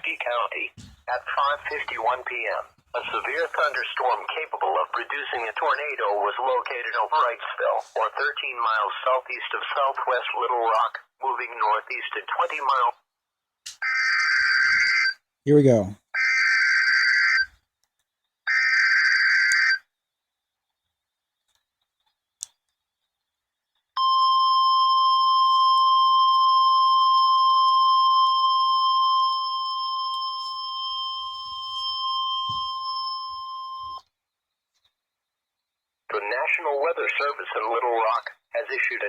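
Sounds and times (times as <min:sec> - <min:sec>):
click: 0:21.5 - 0:22.8
steady high alarm beep: 0:24.0 - 0:34.1.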